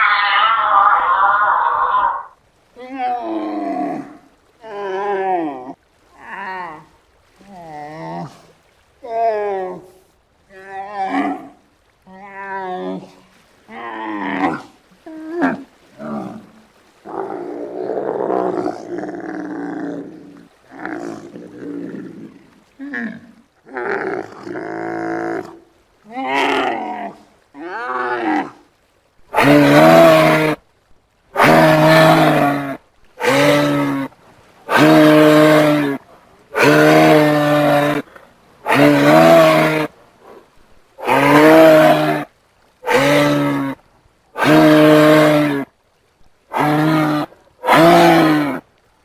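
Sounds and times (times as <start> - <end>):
giraffe calling: 0.0 - 2.4.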